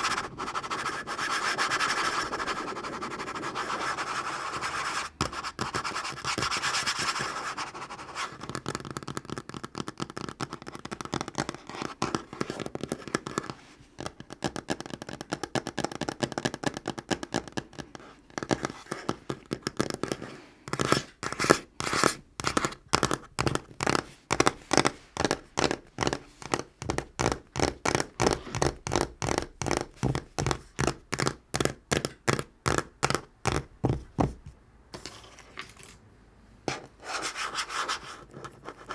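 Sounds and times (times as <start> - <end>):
fingernails tapping on a tabletop: 18.4 - 34.5.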